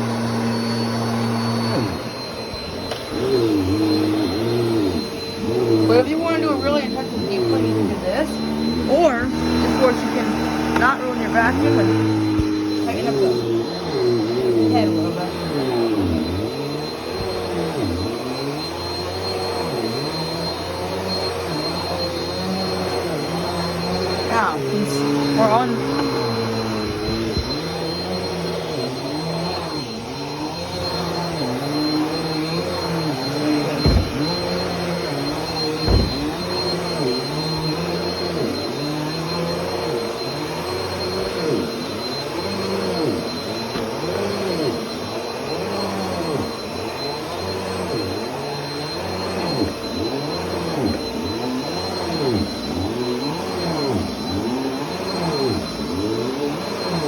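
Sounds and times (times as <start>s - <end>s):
vacuum cleaner running on carpet: 0.0s - 57.0s
sharp knocks: 33.8s - 34.2s, 35.8s - 36.2s.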